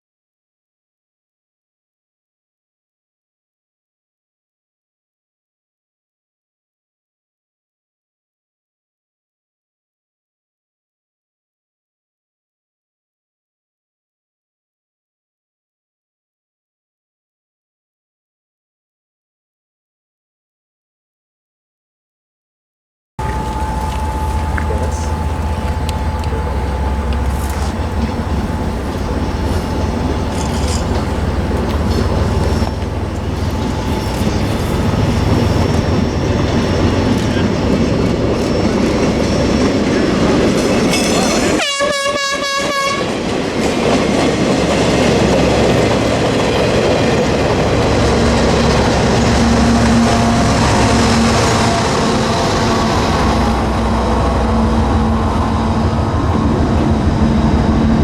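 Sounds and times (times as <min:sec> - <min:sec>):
train horn blast: 0:23.2 - 0:39.3, 0:40.1 - 0:43.3, 0:47.6 - 0:58.0
train rumbling past: 0:23.2 - 0:58.0.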